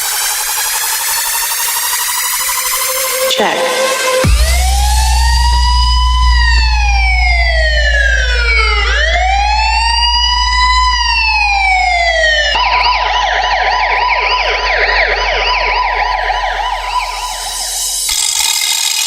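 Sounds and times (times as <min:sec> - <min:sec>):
siren sound effect: 0:00.0 - 0:18.4
trance track: 0:00.0 - 0:18.8
deep sub-bass drone: 0:02.3 - 0:18.2.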